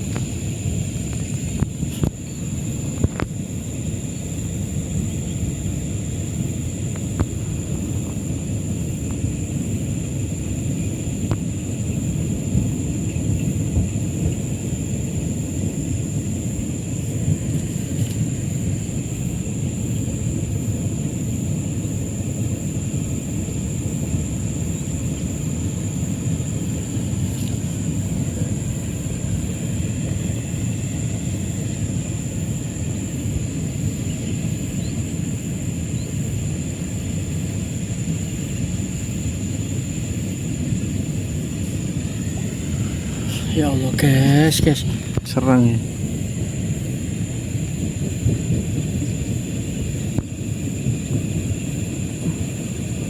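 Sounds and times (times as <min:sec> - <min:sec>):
wind buffeting microphone: 0:00.0 - 0:53.0.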